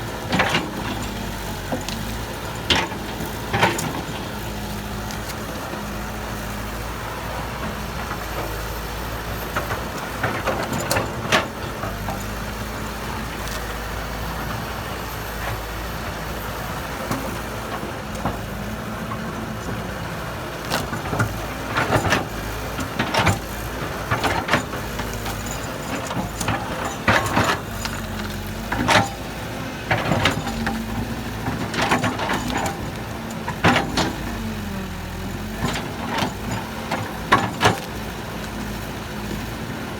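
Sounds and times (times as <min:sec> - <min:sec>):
diesel earthmoving machinery running: 0:00.0 - 0:39.9.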